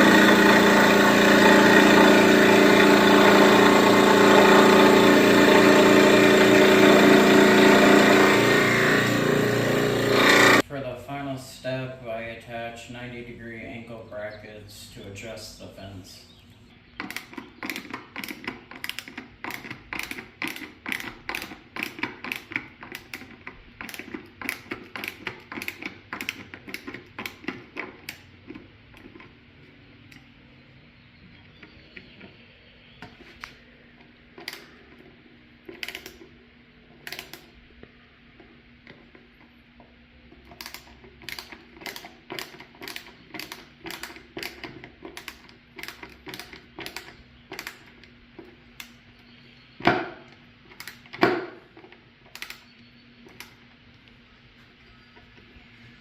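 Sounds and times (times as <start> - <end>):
screwdriver clicking: 35.6 - 36.3, 40.4 - 48.1, 52.3 - 53.6.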